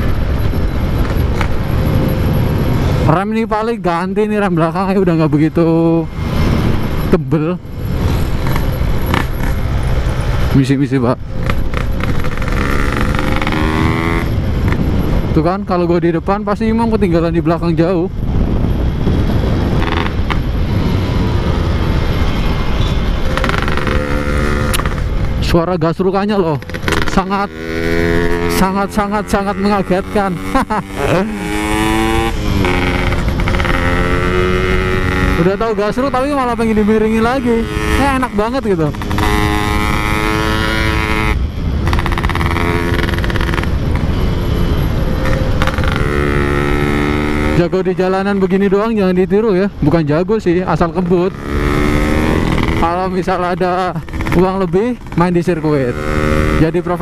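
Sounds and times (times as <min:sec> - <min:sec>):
two-stroke motorcycle engine: 0:11.2 - 0:15.3, 0:19.4 - 0:25.6, 0:26.4 - 0:48.6, 0:50.8 - 0:57.0
wind buffeting on microphone: 0:11.2 - 0:25.6.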